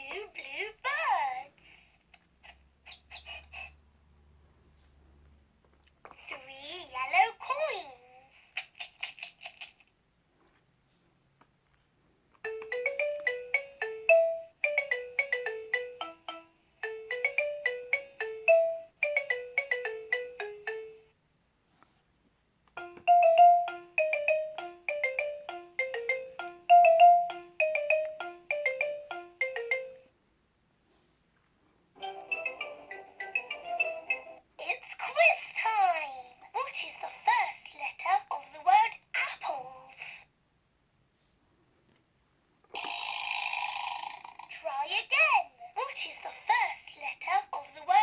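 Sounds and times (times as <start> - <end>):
toy electronic melody: 12.4 - 21.0, 22.8 - 30.1, 32.0 - 34.4.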